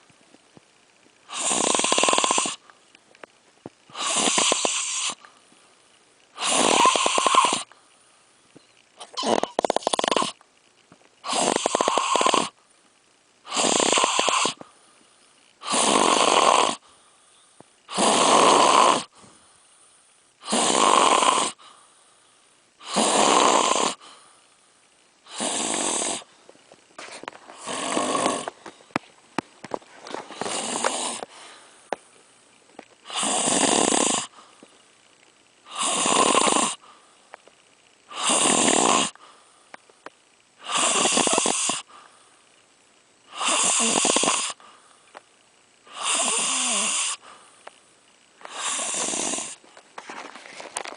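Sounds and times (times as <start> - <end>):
person snoring: 1.3 - 2.6, 3.9 - 5.3, 6.4 - 7.7, 9.0 - 10.4, 11.2 - 12.6, 13.4 - 14.6, 15.6 - 16.8, 17.9 - 19.2, 20.4 - 21.8, 22.8 - 24.2, 25.3 - 26.3, 27.5 - 28.6, 30.2 - 31.6, 33.0 - 34.4, 35.7 - 36.9, 38.1 - 39.2, 40.6 - 42.0, 43.3 - 44.6, 45.9 - 47.4, 48.4 - 49.6.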